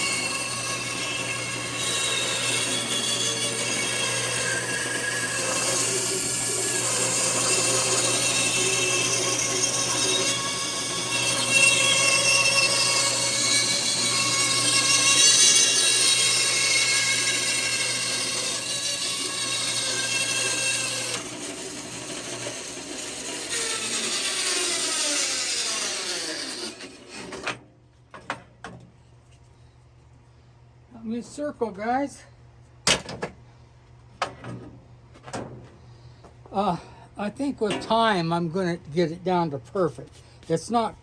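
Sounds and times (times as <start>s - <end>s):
bandsaw cutting wood: 0.0s - 27.6s
bandsaw winding down: 0.0s - 27.6s.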